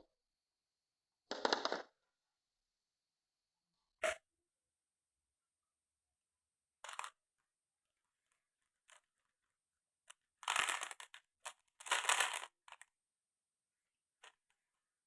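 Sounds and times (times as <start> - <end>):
marbles clacking on wood: 1.3 - 1.8, 11.8 - 12.8
marbles rattling rolls: 11.8 - 12.8.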